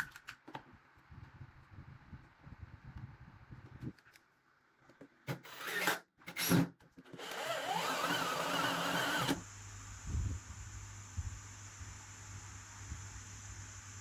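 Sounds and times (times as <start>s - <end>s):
power tool motor whining: 7.2s - 9.6s.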